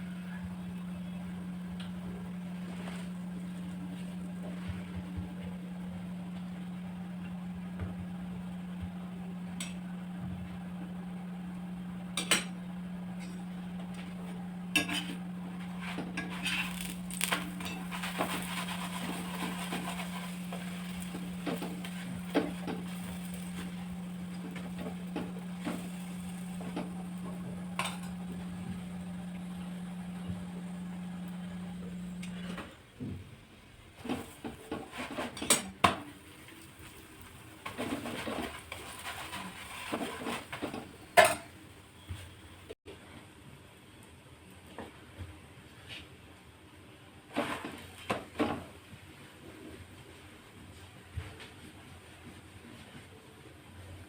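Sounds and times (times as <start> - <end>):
low hum: 8.3 - 32.7.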